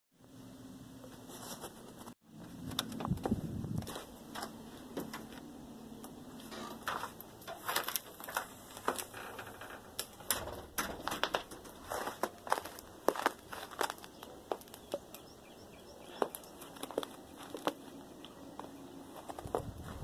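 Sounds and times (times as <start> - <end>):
frozen snow crunching: 11.8 - 14.8.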